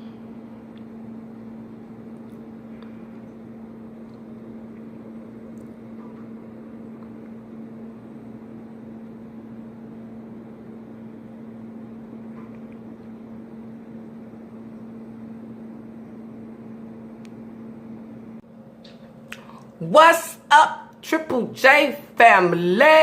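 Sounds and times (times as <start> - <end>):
steady mechanical hum: 0.0 - 23.0.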